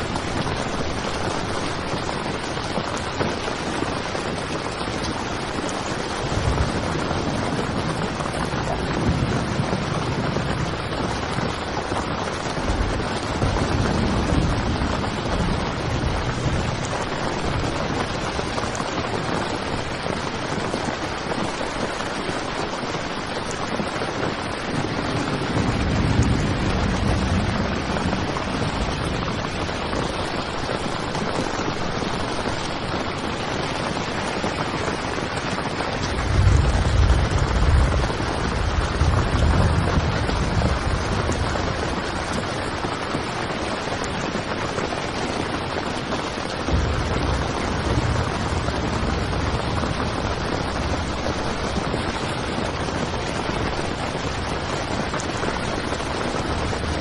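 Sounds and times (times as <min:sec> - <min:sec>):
heavy rain on a tent: 0:00.0 - 0:57.0
deep low rumbles: 0:24.8 - 0:30.0, 0:46.7 - 0:53.1.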